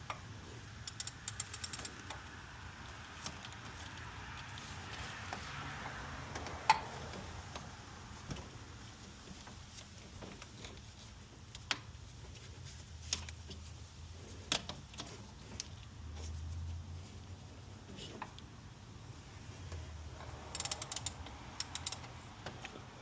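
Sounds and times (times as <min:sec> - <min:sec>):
hand tools clicking and clinking: 0:00.8 - 0:02.2, 0:20.5 - 0:22.2.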